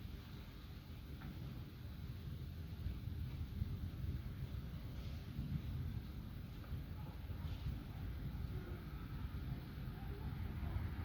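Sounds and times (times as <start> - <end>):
wind buffeting microphone: 1.0 - 11.0.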